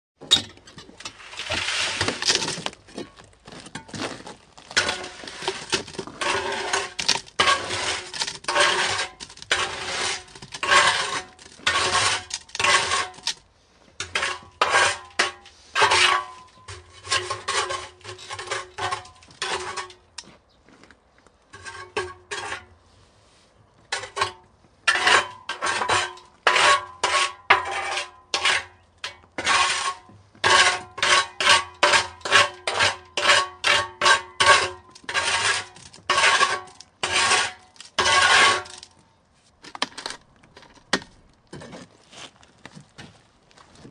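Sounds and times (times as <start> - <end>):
steel trowel scraping concrete: 0.9 - 3.1, 3.7 - 13.4, 14.0 - 20.1, 21.6 - 22.7, 23.9 - 38.9.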